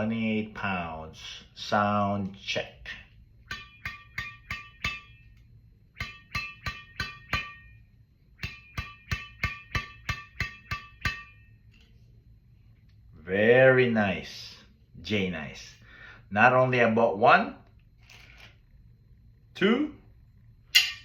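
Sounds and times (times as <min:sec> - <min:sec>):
racket strings pinging: 0:03.4 - 0:11.8.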